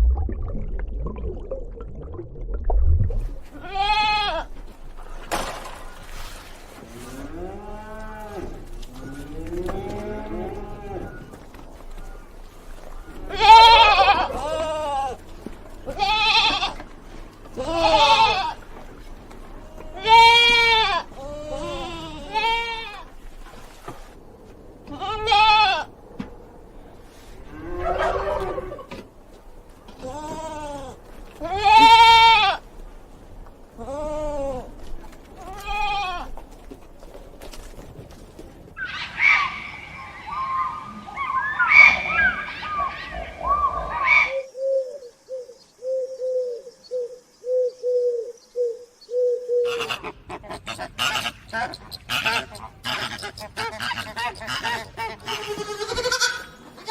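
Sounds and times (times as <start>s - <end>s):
goat bleating: 3.5s - 4.5s, 13.3s - 15.2s, 15.8s - 16.8s, 17.5s - 18.6s, 19.6s - 23.1s, 24.9s - 25.9s, 30.0s - 32.6s, 35.4s - 36.4s, 53.8s - 56.9s
dove cooing: 42.1s - 50.8s.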